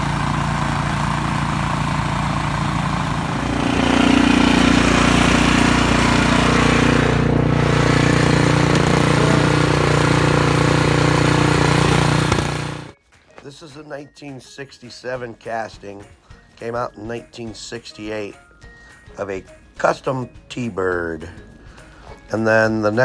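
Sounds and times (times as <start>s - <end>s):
motor running: 0.0s - 13.0s.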